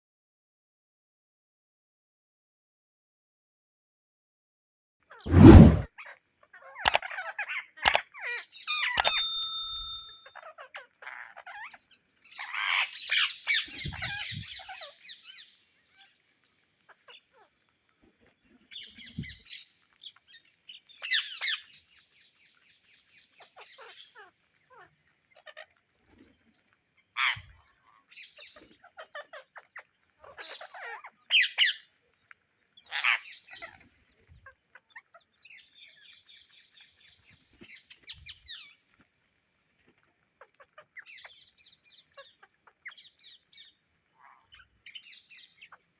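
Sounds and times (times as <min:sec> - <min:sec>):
parakeets chattering and squawking: 0:28.2 - 0:31.8, 0:40.4 - 0:45.8.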